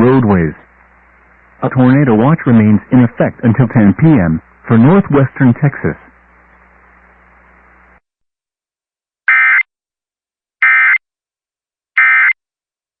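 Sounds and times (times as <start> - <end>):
radio hiss and hum: 0.0 - 8.0.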